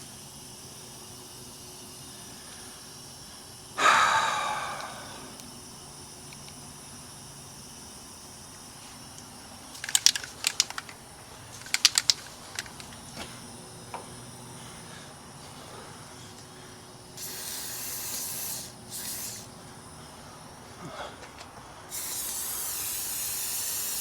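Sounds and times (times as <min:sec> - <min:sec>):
metal clinks and rattles: 0:09.7 - 0:13.0.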